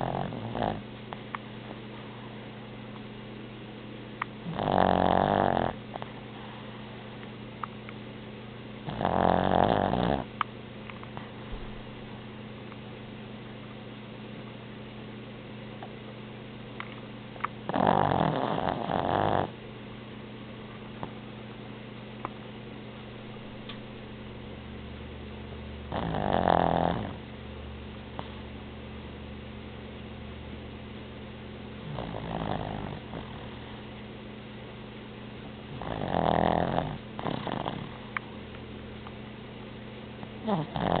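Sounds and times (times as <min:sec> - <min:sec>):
dog snoring: 0:00.0 - 0:00.9, 0:04.4 - 0:06.8, 0:08.8 - 0:10.3, 0:17.6 - 0:19.6, 0:21.0 - 0:21.2, 0:25.9 - 0:27.3, 0:28.1 - 0:28.5, 0:31.8 - 0:33.9, 0:35.7 - 0:38.1, 0:40.4 - 0:41.0
steady low hum: 0:00.0 - 0:41.0.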